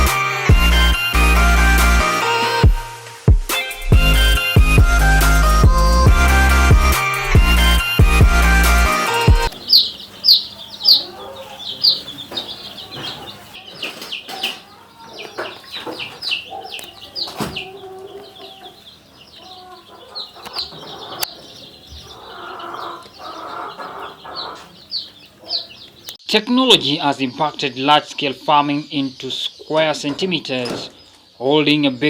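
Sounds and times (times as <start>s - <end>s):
chicks peeping: 0.0s - 32.0s
knocks and rustling: 16.8s - 17.7s, 30.0s - 31.0s.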